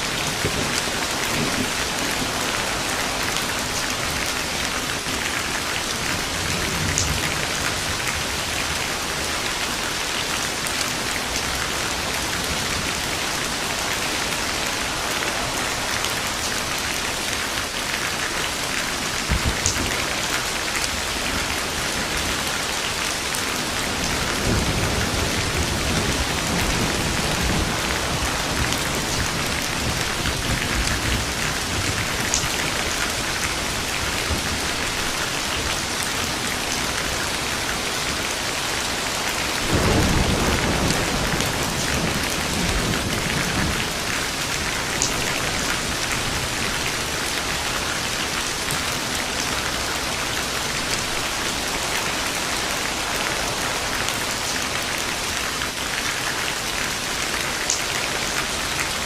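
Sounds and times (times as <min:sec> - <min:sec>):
thunderclap: 0:00.0 - 0:05.2, 0:23.6 - 0:35.2, 0:39.5 - 0:46.9
thunder rumbling: 0:00.0 - 0:55.2
heavy rain: 0:00.0 - 0:59.0.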